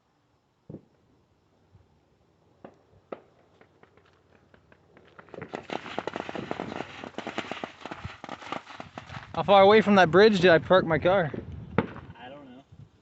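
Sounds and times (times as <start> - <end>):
fireworks popping and crackling: 2.6 - 9.7, 11.3 - 12.2.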